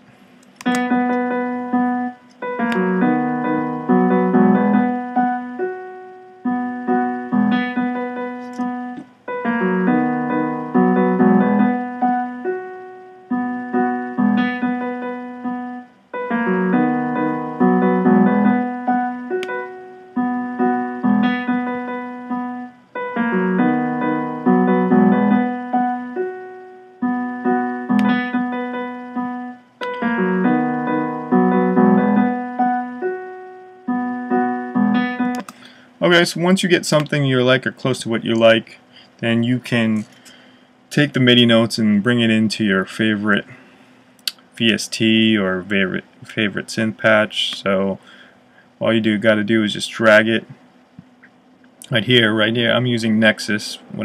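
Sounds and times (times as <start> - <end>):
piano playing looping phrase: 0.6 - 38.3.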